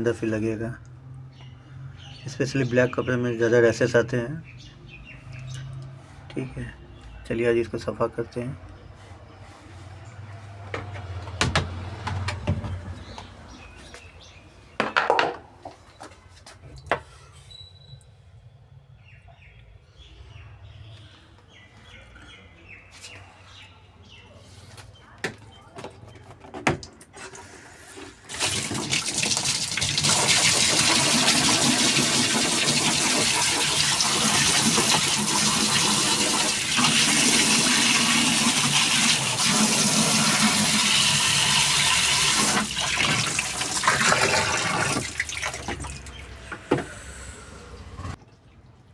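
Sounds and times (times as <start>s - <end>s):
clicks and knocks: 10.7s - 13.3s
water rushing into washing machine: 26.8s - 48.3s.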